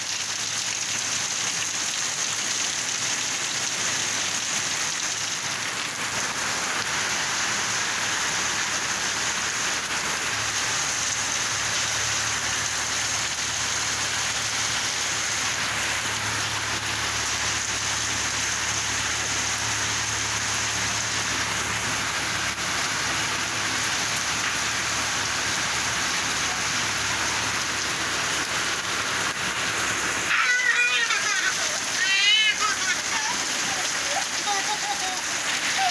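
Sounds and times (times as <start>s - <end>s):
rain pattering on surfaces: 0.0s - 35.9s
high-pitched voice: 30.3s - 35.9s.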